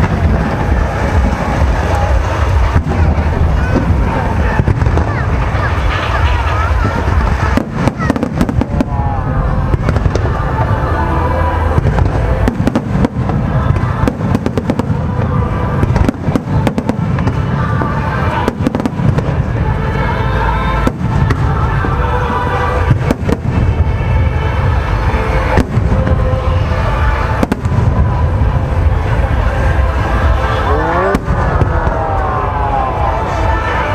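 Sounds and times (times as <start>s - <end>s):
fireworks bursting bangs: 0.0s - 33.9s
low rumble: 0.0s - 33.9s
music playing: 0.0s - 33.9s.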